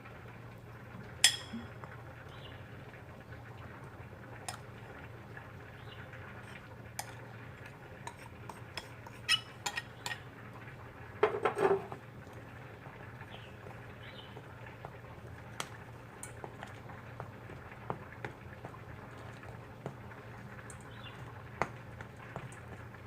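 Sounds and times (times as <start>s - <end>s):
low steady hum: 0.0s - 23.0s
dishes clattering: 11.2s - 12.0s.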